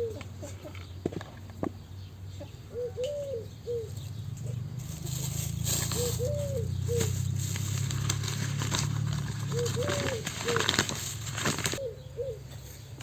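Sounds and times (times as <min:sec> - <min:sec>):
dove cooing: 0:00.0 - 0:00.9, 0:02.4 - 0:07.6, 0:09.2 - 0:11.0, 0:11.6 - 0:13.0.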